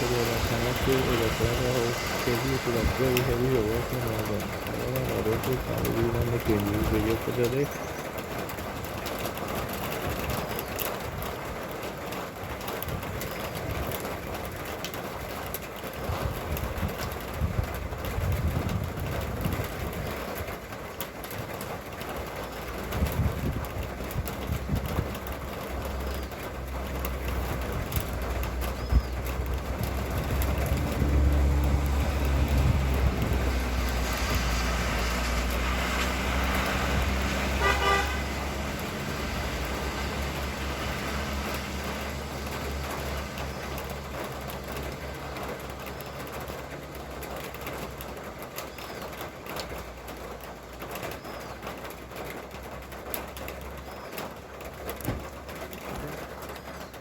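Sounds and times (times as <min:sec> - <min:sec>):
road traffic: 0:00.0 - 0:57.0
steady rain: 0:00.0 - 0:57.0
vehicle engine rumble: 0:00.0 - 0:57.0
wind noise: 0:16.0 - 0:20.4, 0:22.8 - 0:25.3, 0:27.5 - 0:41.1
short horn toot: 0:37.6 - 0:38.3.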